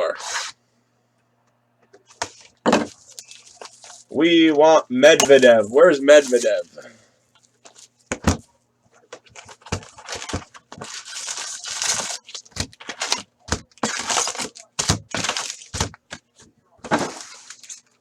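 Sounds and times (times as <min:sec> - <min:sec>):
cards being handled: 0:02.0 - 0:04.2, 0:07.4 - 0:18.0
foil wrappers tearing and crinkling: 0:02.3 - 0:04.2, 0:09.2 - 0:16.2, 0:16.9 - 0:18.0.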